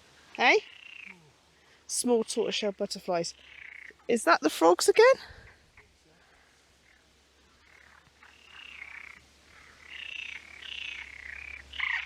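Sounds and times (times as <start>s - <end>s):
frogs croaking in chorus: 0.3s - 4.2s, 6.8s - 12.0s.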